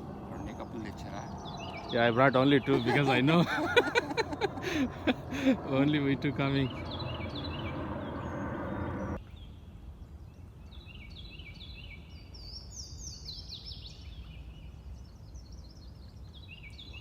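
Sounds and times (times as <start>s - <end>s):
faint low rumble: 0.0s - 10.8s
songbirds singing: 0.0s - 17.0s.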